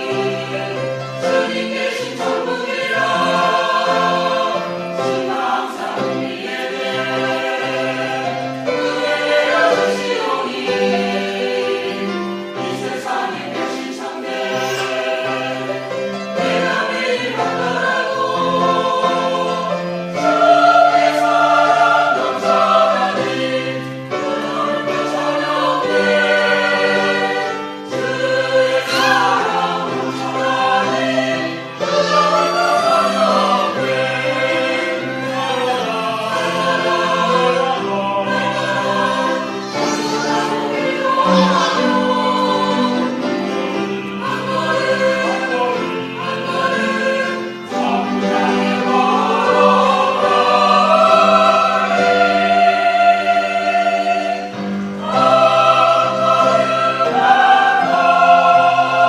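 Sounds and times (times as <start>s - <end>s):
church choir singing a hymn: 0.0s - 59.0s.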